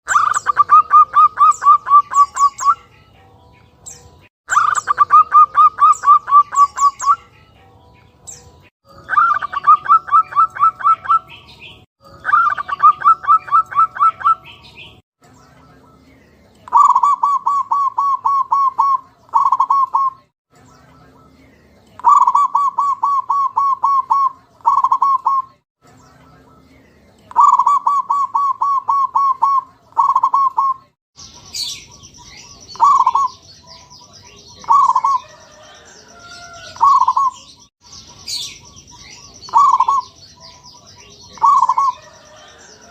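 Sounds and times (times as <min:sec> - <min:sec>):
dove cooing: 0:00.1 - 0:02.8, 0:04.5 - 0:07.2, 0:09.0 - 0:11.3, 0:12.2 - 0:14.5, 0:16.7 - 0:20.2, 0:22.0 - 0:25.5, 0:27.3 - 0:30.8, 0:32.8 - 0:33.4, 0:34.5 - 0:37.5, 0:39.5 - 0:40.2, 0:41.4 - 0:42.9.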